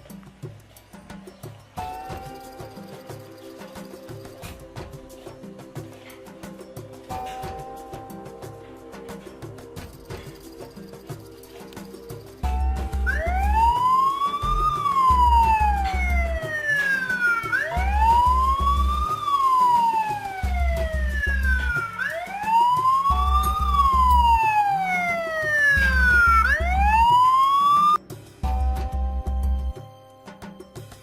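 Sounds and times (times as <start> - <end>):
pulsing low background music: 0.0 - 31.0
alarm siren wailing: 12.4 - 28.0.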